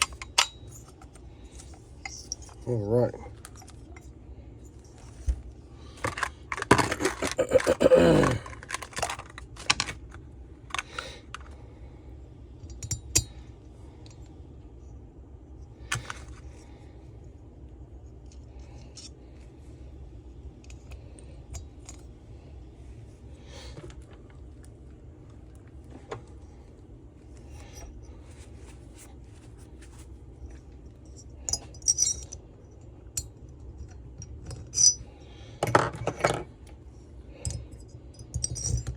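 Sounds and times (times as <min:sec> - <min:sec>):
metal parts clinking on workbench: 0:31.1 - 0:32.4, 0:33.2 - 0:35.0, 0:35.6 - 0:36.5, 0:37.4 - 0:38.9.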